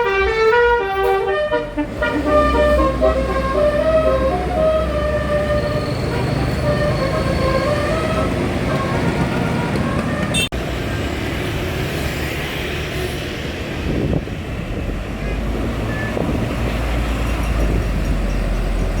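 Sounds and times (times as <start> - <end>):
bus horn playing a tune: 0.0 - 10.6
road noise: 0.0 - 19.0
large vehicle engine: 0.9 - 19.0.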